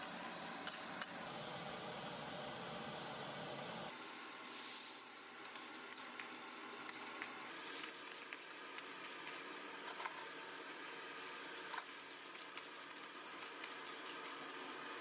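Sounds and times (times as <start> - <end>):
food sizzling in a pan: 3.9 - 15.0.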